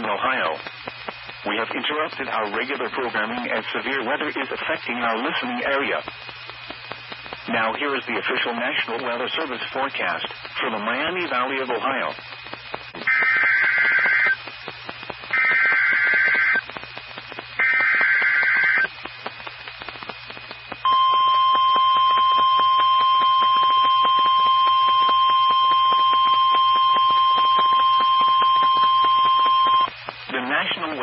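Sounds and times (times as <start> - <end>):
digital header tone bursts: 13.0 - 14.4, 15.3 - 16.7, 17.6 - 18.9
steady alarm tone: 13.0 - 14.4, 15.3 - 16.6, 17.6 - 18.9, 20.8 - 29.9.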